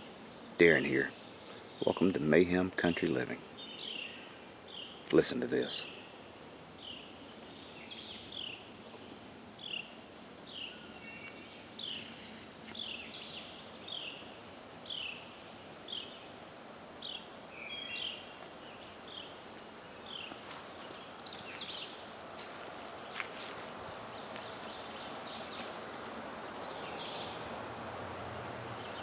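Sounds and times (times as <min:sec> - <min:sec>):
creek rushing: 0:18.9 - 0:29.0.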